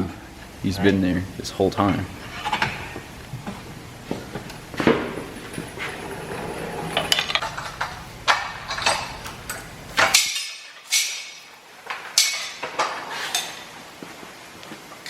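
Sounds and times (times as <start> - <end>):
metal tools clinking and clanking: 6.8 - 13.7.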